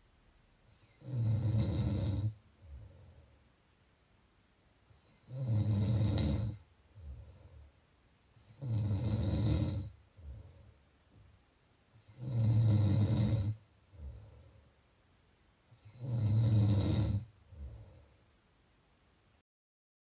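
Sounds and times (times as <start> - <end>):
person snoring: 0.9 - 2.9, 5.1 - 7.4, 8.5 - 10.4, 12.1 - 14.3, 15.8 - 17.9.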